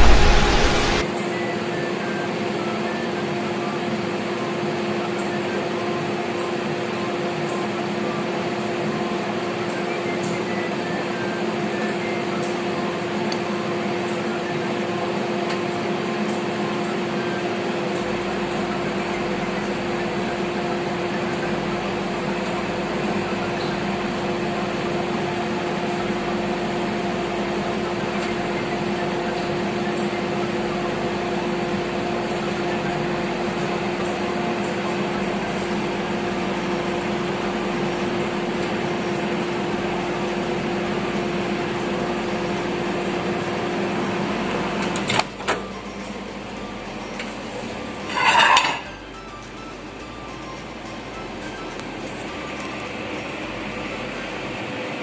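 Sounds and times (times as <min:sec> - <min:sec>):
microwave oven humming: 0:00.0 - 0:55.0.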